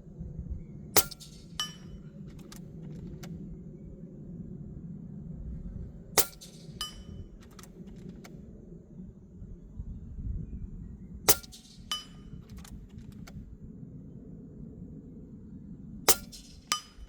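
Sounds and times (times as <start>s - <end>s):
air rifle shot: 1.0s - 2.6s, 6.2s - 7.1s, 11.3s - 12.2s, 16.1s - 17.0s.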